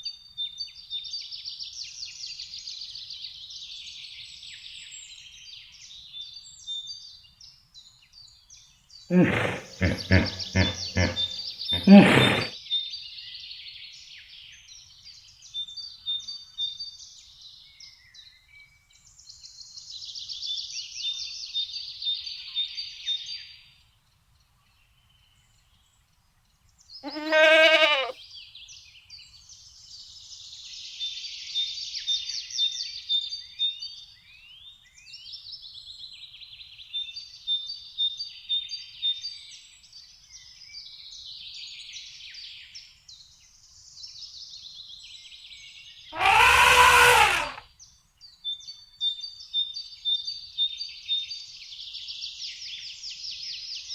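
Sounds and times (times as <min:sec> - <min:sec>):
sheep bleating: 0:09.1 - 0:12.5, 0:27.0 - 0:28.1, 0:46.2 - 0:47.6
small birds chirping: 0:09.1 - 0:12.5, 0:27.0 - 0:28.1.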